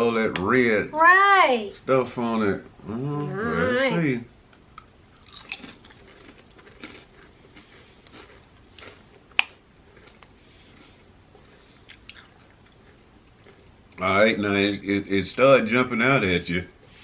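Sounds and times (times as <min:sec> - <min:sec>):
potato chips crunching: 0:05.2 - 0:10.9, 0:11.8 - 0:13.7.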